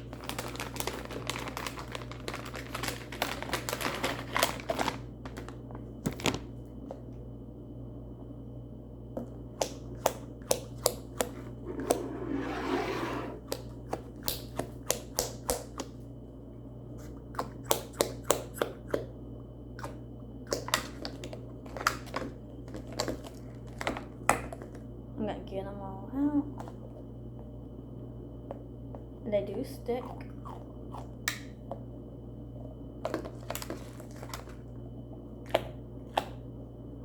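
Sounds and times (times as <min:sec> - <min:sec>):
packaging rustle: 0:00.1 - 0:06.4.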